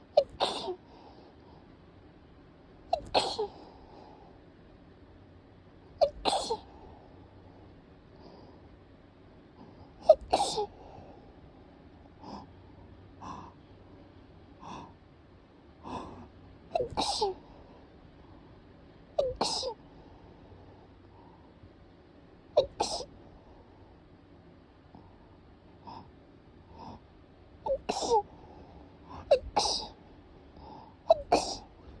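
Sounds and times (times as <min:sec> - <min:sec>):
person sneezing: 0:00.1 - 0:00.8, 0:02.9 - 0:03.6, 0:06.0 - 0:06.7, 0:10.0 - 0:10.7, 0:16.7 - 0:17.4, 0:19.2 - 0:19.8, 0:22.6 - 0:23.1, 0:27.7 - 0:28.3, 0:29.3 - 0:30.0, 0:31.1 - 0:31.7
gasping breaths: 0:09.6 - 0:13.7, 0:15.8 - 0:18.6.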